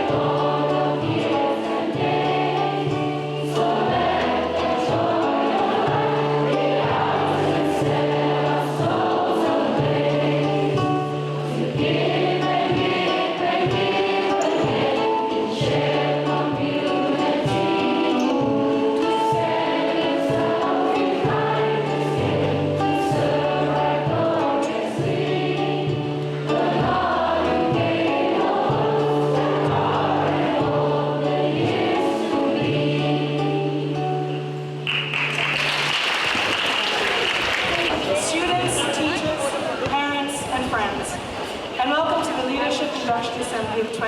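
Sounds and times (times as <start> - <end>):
choir singing: 0.0 - 34.8
instrumental accompaniment: 0.0 - 36.5.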